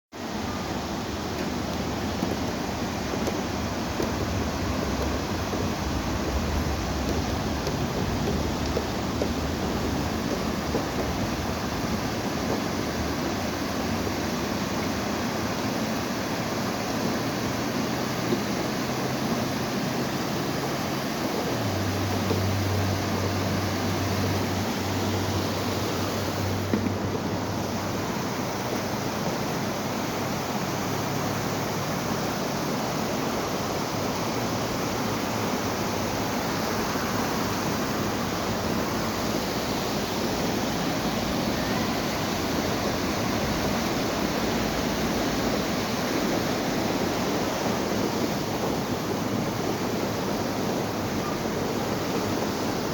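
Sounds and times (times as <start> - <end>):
river water rushing: 0.2 - 52.9
low engine-like hum: 0.3 - 29.2.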